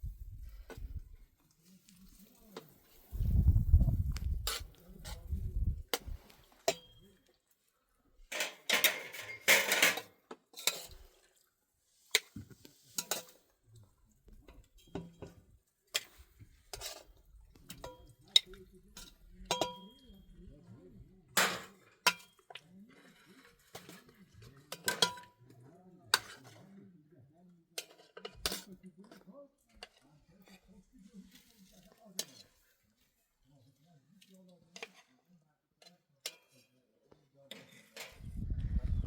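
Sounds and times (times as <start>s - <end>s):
dishes and cutlery clinking: 6.0s - 7.1s, 8.3s - 11.0s, 12.2s - 13.5s, 17.7s - 20.2s, 24.7s - 25.4s.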